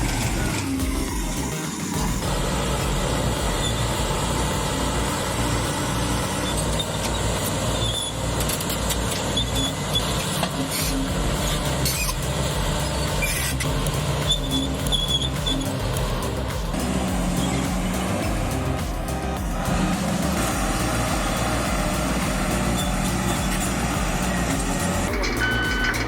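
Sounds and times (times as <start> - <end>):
heavy diesel engine running: 0.0 - 26.0
high squeaks: 5.6 - 26.0.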